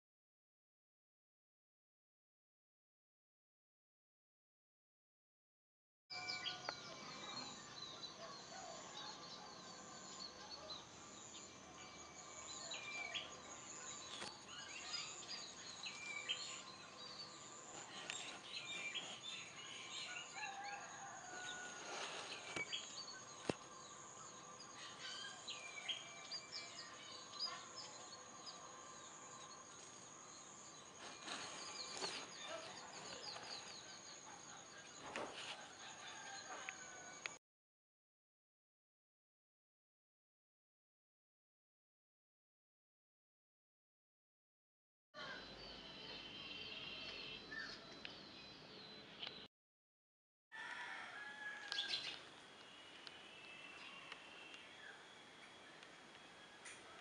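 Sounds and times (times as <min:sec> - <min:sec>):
birds chirping: 0:06.3 - 0:35.3, 0:51.2 - 0:57.0.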